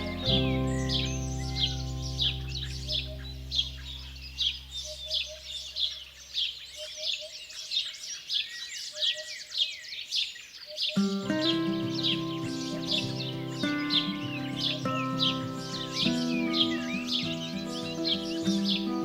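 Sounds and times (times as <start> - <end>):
soft background music: 0.0 - 4.5, 11.0 - 19.0
small songbirds chirping: 0.0 - 19.0.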